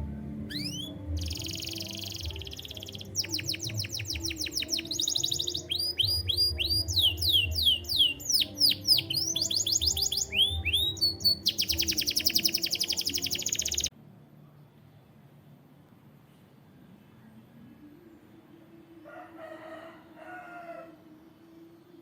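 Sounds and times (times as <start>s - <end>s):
canary singing: 0.4s - 13.9s.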